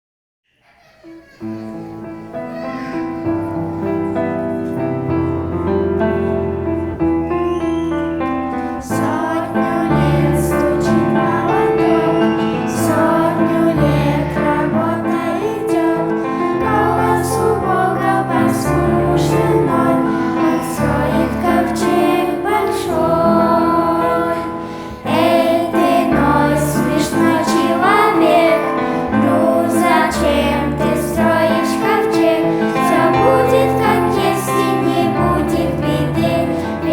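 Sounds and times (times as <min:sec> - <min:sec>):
children's choir singing: 0:00.6 - 0:36.9
instrumental accompaniment: 0:01.7 - 0:36.9.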